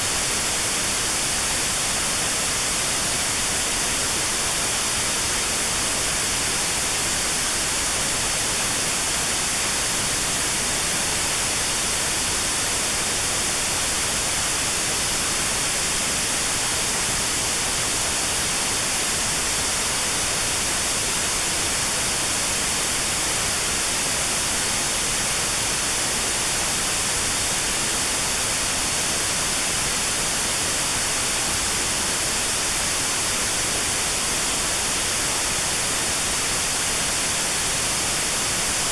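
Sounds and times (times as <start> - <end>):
steady white noise hiss: 0.0 - 38.9.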